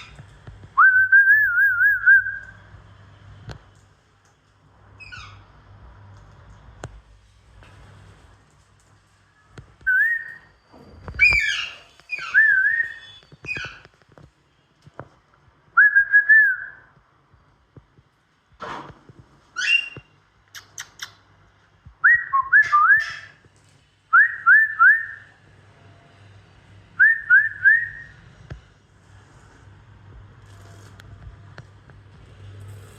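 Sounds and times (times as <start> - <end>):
parrots whistling: 9.9 - 10.5, 11.2 - 13.8, 19.6 - 20.0
parrot screeches: 11.2 - 13.8, 19.6 - 20.0.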